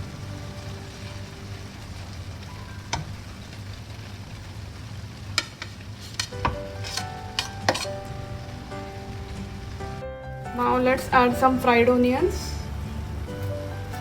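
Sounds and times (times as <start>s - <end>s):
low sizzle: 0.0s - 14.0s
spoon scraping a pot: 5.6s - 8.0s.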